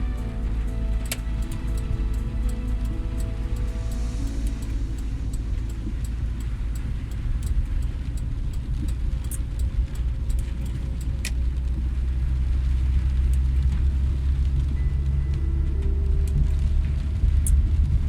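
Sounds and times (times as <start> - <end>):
sharp ticks: 0.0 - 13.7
car low rumble: 0.0 - 18.0
road noise: 0.0 - 18.0.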